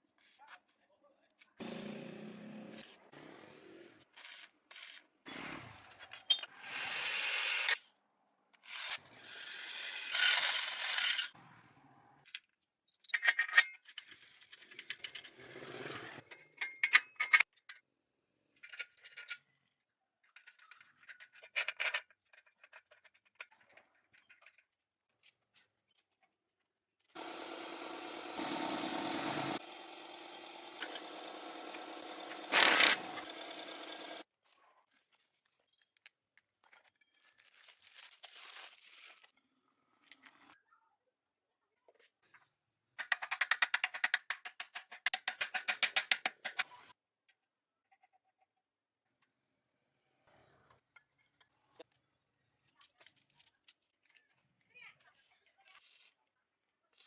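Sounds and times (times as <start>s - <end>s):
bursts of tool noise: 30.7s - 34.2s.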